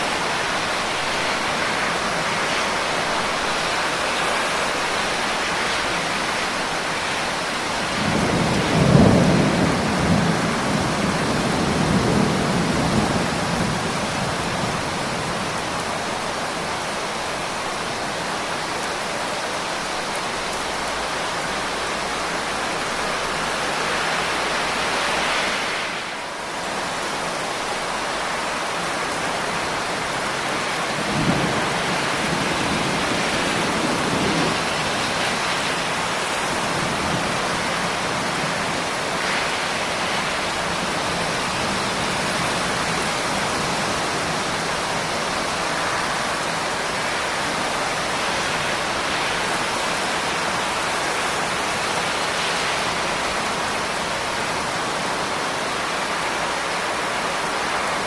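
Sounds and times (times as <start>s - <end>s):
steady rain pouring: 0.0s - 58.0s
low rumble of thunder: 7.9s - 14.9s.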